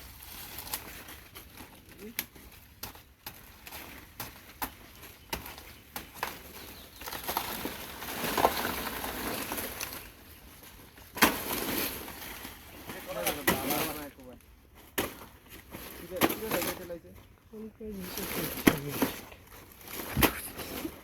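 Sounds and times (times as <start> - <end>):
leaves rustling: 0.0 - 21.0
blade chopping plant stem: 18.6 - 19.2.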